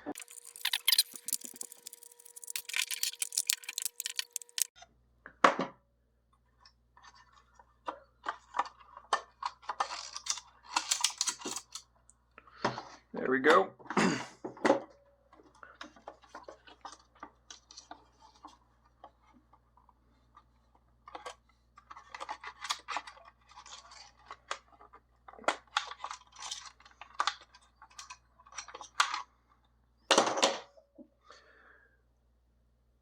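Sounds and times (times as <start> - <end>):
small plastic parts clicking and scraping: 0.0 - 4.8, 6.4 - 12.0, 15.3 - 29.7.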